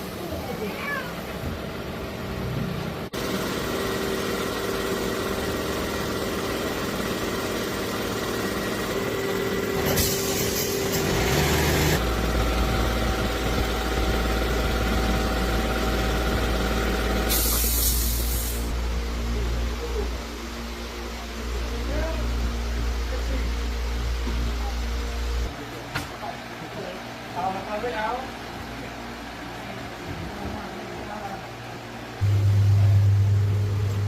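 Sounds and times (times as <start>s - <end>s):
machine humming: 1.5s - 17.4s, 18.6s - 25.7s, 28.3s - 34.0s
bursts of hissing air: 17.2s - 18.8s.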